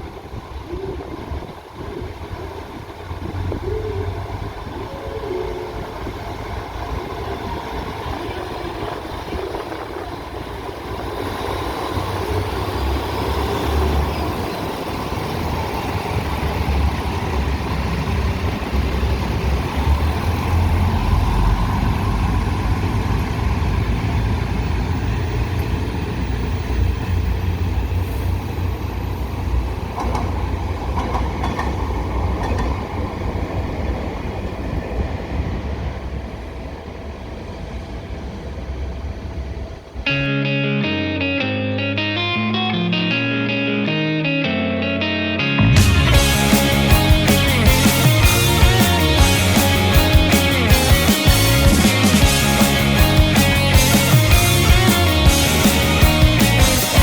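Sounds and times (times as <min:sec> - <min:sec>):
train rumbling: 0:00.0 - 0:40.4, 0:45.0 - 0:57.0.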